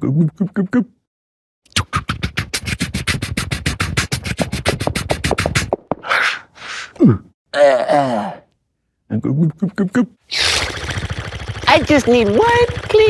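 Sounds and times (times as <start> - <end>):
man making mouth pops: 1.7 - 6.4
breathy mouth hisses: 1.9 - 7.0.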